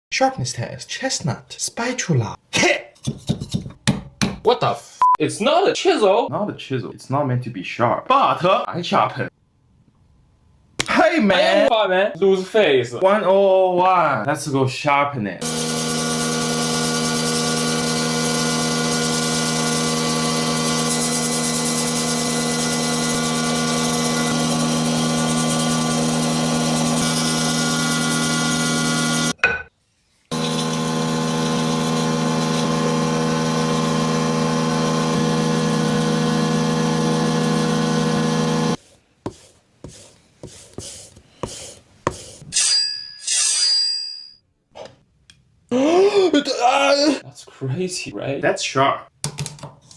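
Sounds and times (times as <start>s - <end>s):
powered sharpener humming: 15.4s - 29.4s, 30.3s - 38.8s.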